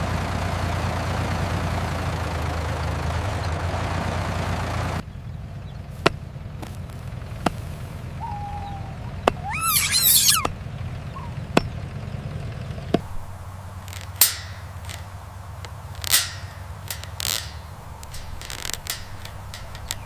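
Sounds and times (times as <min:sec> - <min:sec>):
low engine hum: 0:00.0 - 0:20.0
high squeal: 0:08.2 - 0:10.5
sharp clicks: 0:09.2 - 0:10.6, 0:12.9 - 0:20.0
short hisses: 0:09.4 - 0:10.5.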